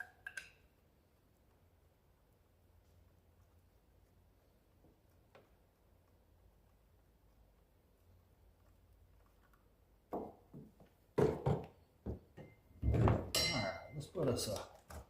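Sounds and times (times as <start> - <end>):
metal tools knocking and clinking: 13.3 - 14.0
short ringing clink: 13.4 - 14.0.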